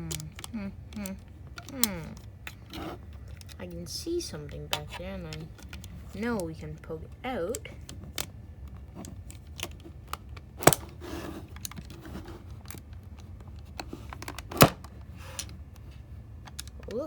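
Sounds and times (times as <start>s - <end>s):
plastic pieces clicking and tapping: 0.0s - 3.7s, 4.4s - 10.9s, 11.5s - 17.0s
sharp plastic clacks: 4.4s - 17.0s.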